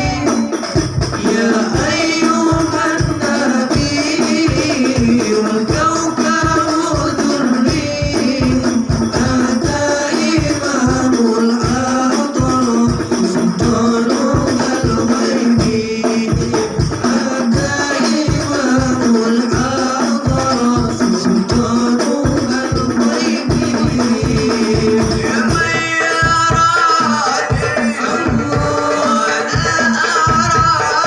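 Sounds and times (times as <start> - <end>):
person singing melody: 0.0 - 3.8
hand drums and frame drums: 0.0 - 31.0.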